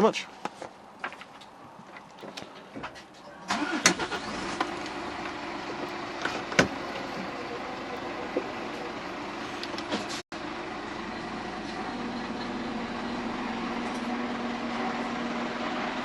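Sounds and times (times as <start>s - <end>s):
diesel engine running: 3.5s - 16.0s.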